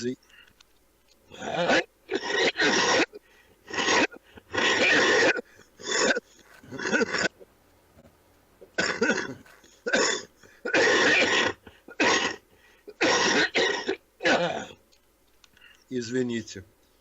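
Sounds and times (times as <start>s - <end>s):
man coughing: 1.3s - 7.3s, 8.8s - 14.8s.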